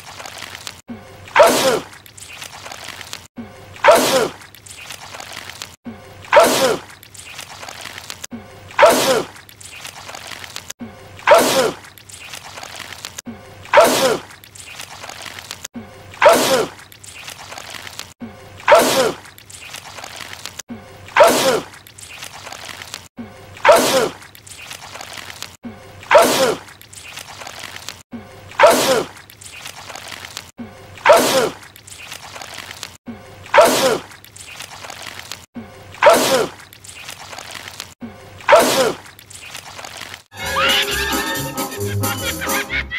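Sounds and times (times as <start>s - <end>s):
man sneezing: 3.8s - 4.4s, 8.8s - 9.3s, 11.3s - 11.8s, 13.7s - 14.2s, 18.7s - 19.2s, 21.2s - 21.7s, 23.6s - 24.2s, 26.1s - 26.6s, 28.6s - 29.1s, 31.0s - 31.6s, 33.5s - 34.1s, 36.0s - 36.6s, 38.5s - 39.0s.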